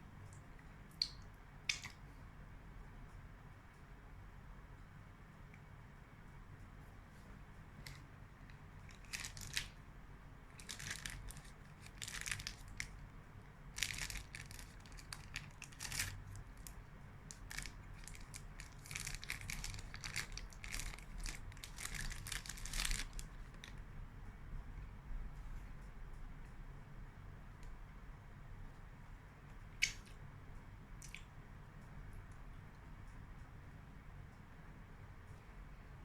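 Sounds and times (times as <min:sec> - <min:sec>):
crunching chocolates: 0:08.8 - 0:09.8, 0:10.5 - 0:13.0, 0:13.7 - 0:23.8
wrapper crinkling: 0:08.9 - 0:09.8, 0:10.5 - 0:13.0, 0:13.7 - 0:23.8.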